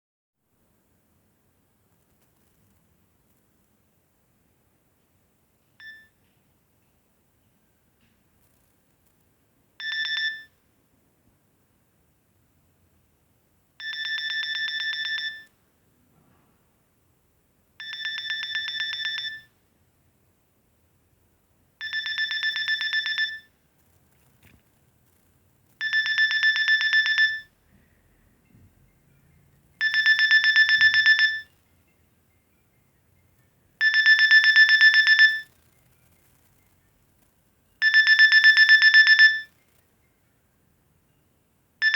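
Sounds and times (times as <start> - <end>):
pulsing electronic phone ringtone: 9.8 - 10.6, 13.8 - 15.5, 17.8 - 19.5, 21.8 - 23.6, 25.8 - 27.6, 29.8 - 31.6, 33.8 - 35.6, 37.8 - 39.6.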